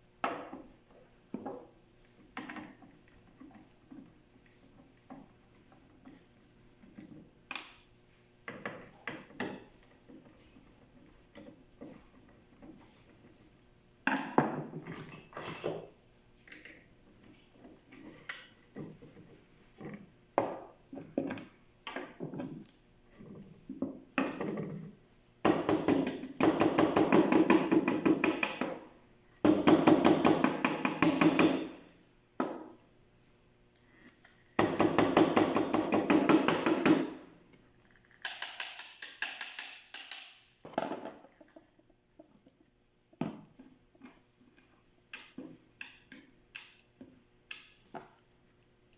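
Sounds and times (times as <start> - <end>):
plastic parts clicking and knocking: 38.1 - 48.2.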